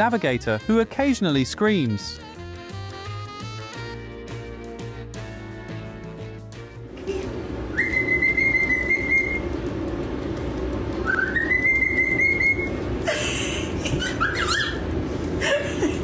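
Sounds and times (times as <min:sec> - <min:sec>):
steady low hum: 0:06.8 - 0:16.0
parrot chirping: 0:07.7 - 0:09.5, 0:11.0 - 0:12.8, 0:14.0 - 0:15.0
parrot whistling: 0:07.7 - 0:09.5, 0:11.0 - 0:12.8, 0:14.0 - 0:14.9.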